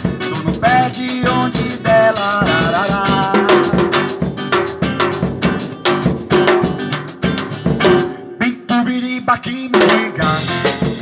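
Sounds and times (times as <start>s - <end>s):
drum kit beating a rhythm: 0.0s - 8.5s, 9.7s - 11.0s
guitar notes: 0.0s - 8.6s.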